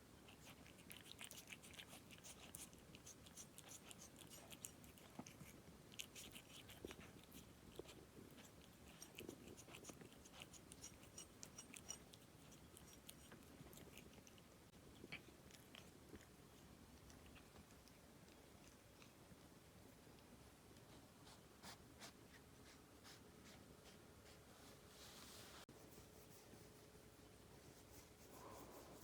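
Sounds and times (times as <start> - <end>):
cat chewing a snack: 0.2 - 21.3.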